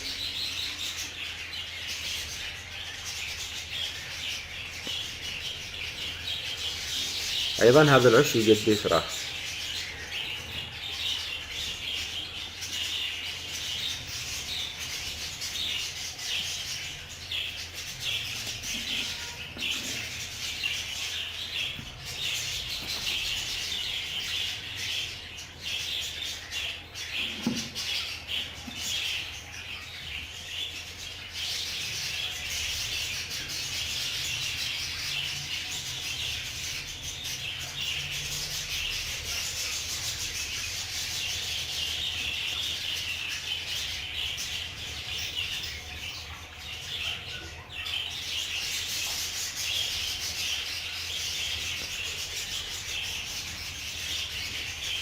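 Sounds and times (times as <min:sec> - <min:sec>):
budgerigars chattering and chirping: 0:00.0 - 0:55.0.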